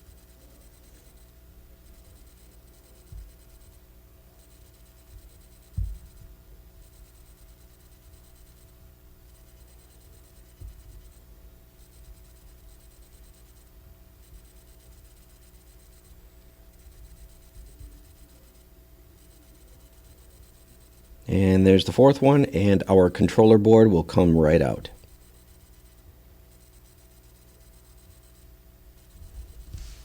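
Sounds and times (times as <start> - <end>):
steady low hum: 0.0 - 30.0
soft low thumps: 5.2 - 6.4
light scratching: 29.3 - 30.0.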